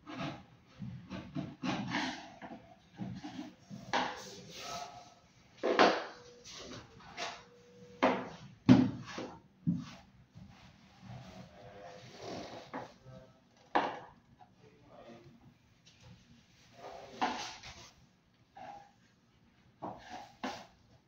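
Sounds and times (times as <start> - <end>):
hard objects knocking and scraping: 0.1 - 4.3.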